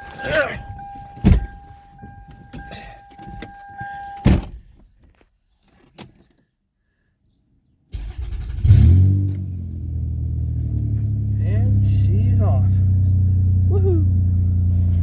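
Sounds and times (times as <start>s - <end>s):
steady warning tone: 0.0s - 4.4s
car engine starting and idling: 0.0s - 4.8s, 7.9s - 15.0s.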